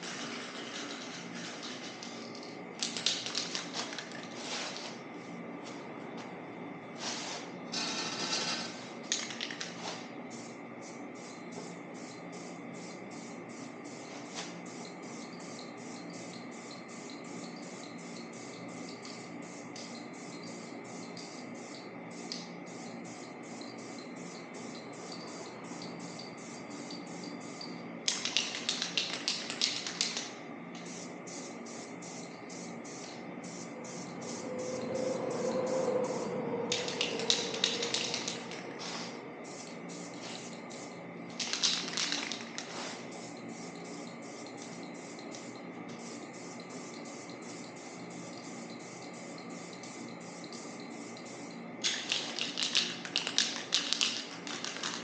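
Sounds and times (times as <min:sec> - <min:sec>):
spray paint can spraying: 0:00.0 - 0:05.0, 0:07.0 - 0:34.4, 0:36.7 - 0:55.0.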